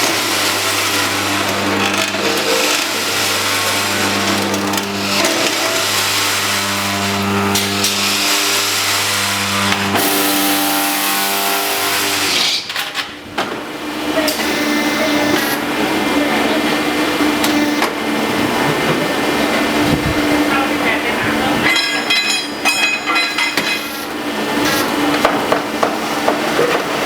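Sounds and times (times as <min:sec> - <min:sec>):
block press motor hum: 0:00.0 - 0:12.6.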